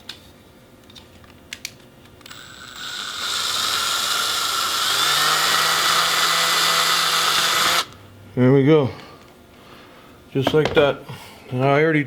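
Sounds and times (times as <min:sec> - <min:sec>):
power drill running: 0:02.2 - 0:08.0.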